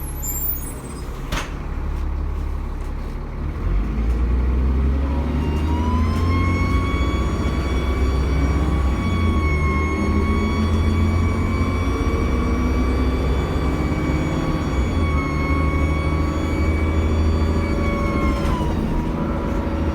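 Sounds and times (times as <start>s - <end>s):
bus diesel engine running: 0.0s - 19.9s
high turbocharger whine: 5.1s - 19.9s.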